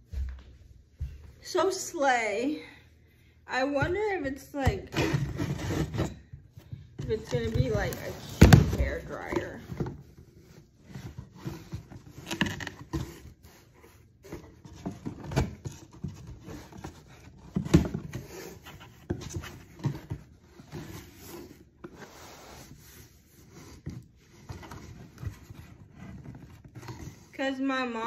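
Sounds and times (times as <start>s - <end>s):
cardboard package scraping and rustling: 5.0s - 27.3s.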